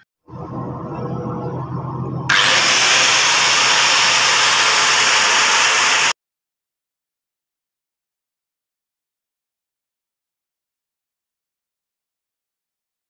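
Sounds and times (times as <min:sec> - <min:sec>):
electric grinder motor hum: 0:02.3 - 0:06.2
harsh grinding noise: 0:02.3 - 0:06.2.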